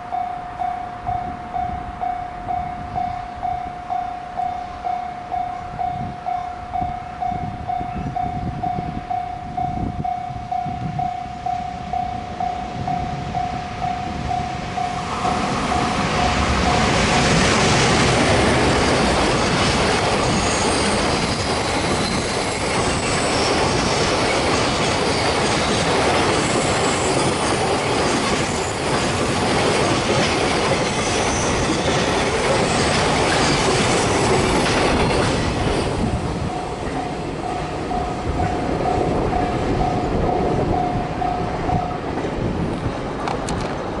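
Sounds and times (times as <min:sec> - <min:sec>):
level crossing warning bell: 0:00.0 - 0:22.2, 0:30.2 - 0:42.2
train wheel squeal: 0:00.0 - 0:42.0
train wheels rolling on rails: 0:00.0 - 0:44.0.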